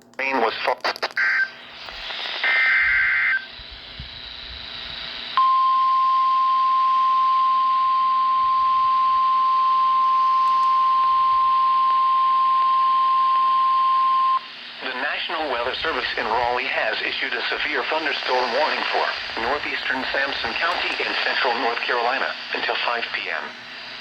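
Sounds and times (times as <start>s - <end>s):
radio static: 0.2s - 5.4s, 11.0s - 24.0s.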